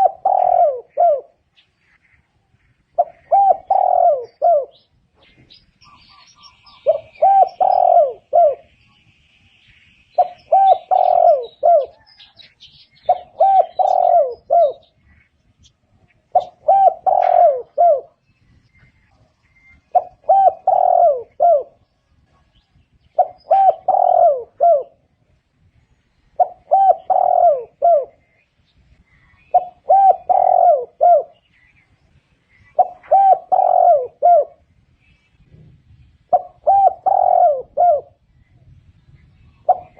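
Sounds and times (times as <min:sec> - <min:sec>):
dove cooing: 0:00.0 - 0:01.9, 0:02.8 - 0:08.8, 0:10.2 - 0:15.2, 0:16.0 - 0:18.2, 0:18.8 - 0:25.2, 0:26.3 - 0:28.4, 0:29.1 - 0:31.5, 0:32.5 - 0:34.7, 0:36.3 - 0:38.4, 0:39.5 - 0:39.9.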